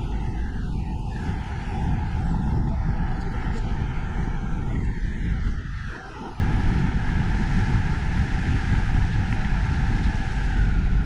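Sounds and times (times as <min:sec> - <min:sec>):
motorhome driving rumble: 0:06.4 - 0:11.0.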